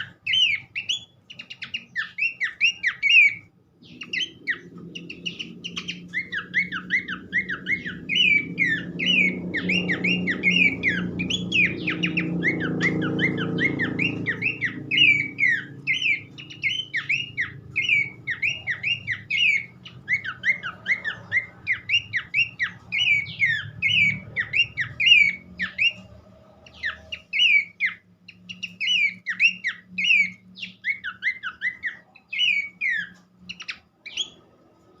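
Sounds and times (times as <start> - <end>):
bird song of whistled notes: 0.0 - 35.0.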